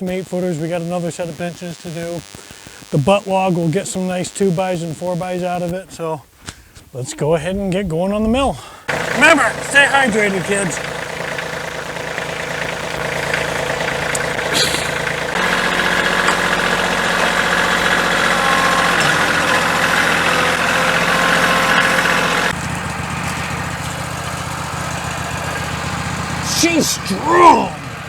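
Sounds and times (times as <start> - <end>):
small engine idling and revving: 8.9 - 28.0.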